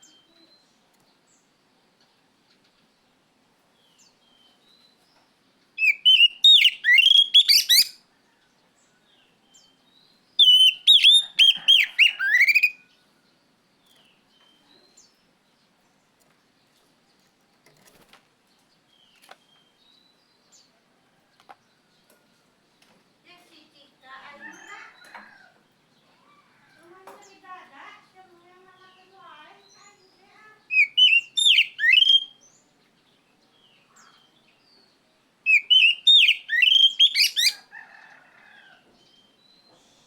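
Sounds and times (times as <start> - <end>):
bird singing whistled phrases: 5.8 - 8.0, 10.4 - 12.8, 30.7 - 32.4, 35.5 - 37.6
faint bird chirps: 5.8 - 15.2, 28.7 - 32.8, 33.4 - 40.0.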